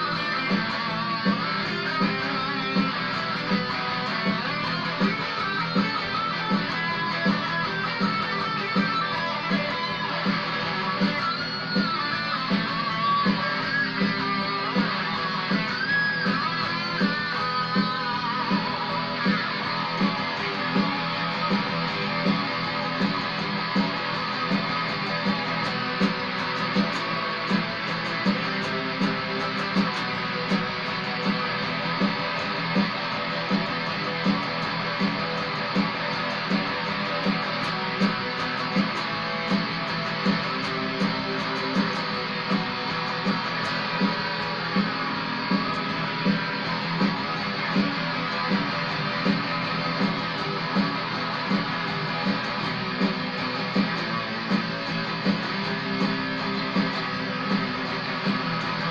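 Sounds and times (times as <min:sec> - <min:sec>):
electric guitar lead notes: 0:00.0 - 0:58.9.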